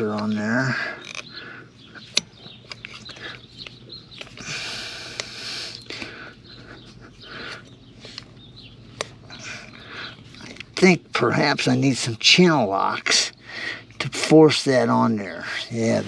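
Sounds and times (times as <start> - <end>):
metal parts clicking and tapping: 1.0 - 1.4, 2.0 - 4.4.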